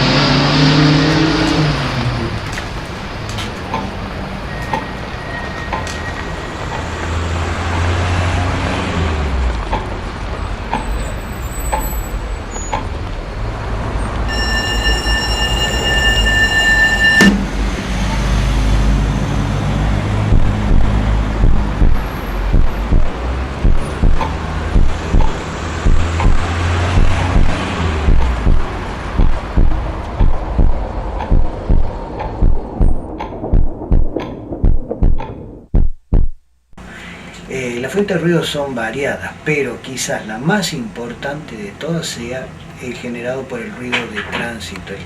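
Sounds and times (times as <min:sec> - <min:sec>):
street traffic rumble: 0:00.0 - 0:35.7, 0:36.8 - 0:45.0
vehicle horn: 0:14.3 - 0:17.6
regular pulsing: 0:14.3 - 0:17.9, 0:20.0 - 0:36.5.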